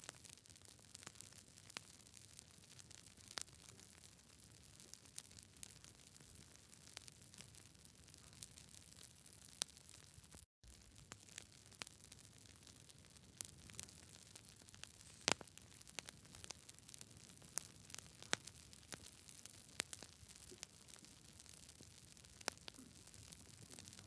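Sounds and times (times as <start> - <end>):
campfire wood crackling: 1.0 - 24.0
soft steady hiss: 10.7 - 24.0.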